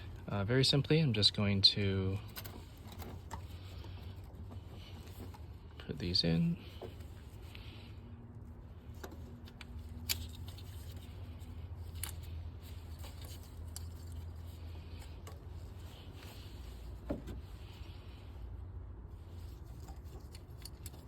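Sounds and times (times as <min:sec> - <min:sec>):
low steady hum: 0:00.0 - 0:21.0
engine parts clicking by hand: 0:02.1 - 0:05.8, 0:08.8 - 0:18.0, 0:19.6 - 0:21.0.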